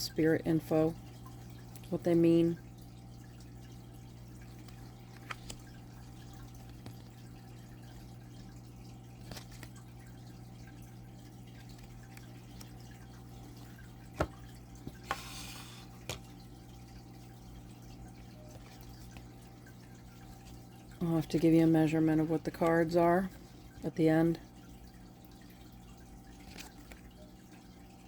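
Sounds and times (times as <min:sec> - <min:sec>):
cards sliding rustle: 0:04.6 - 0:05.6, 0:15.0 - 0:15.9.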